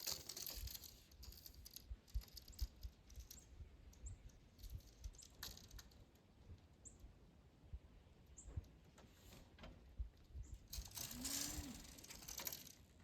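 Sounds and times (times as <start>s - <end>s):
faint rustling and ticking: 0.0s - 7.1s.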